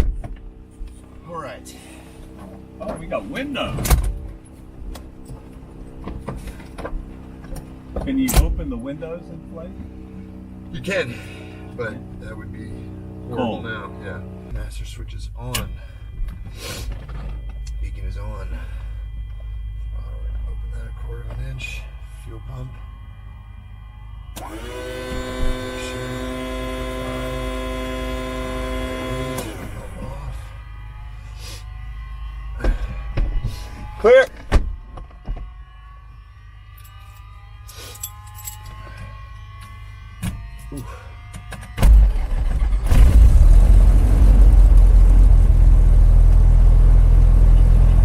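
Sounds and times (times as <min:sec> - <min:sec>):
propeller aircraft engine running: 0:00.0 - 0:31.4, 0:41.4 - 0:48.0
electric fuel pump whine: 0:00.0 - 0:48.0.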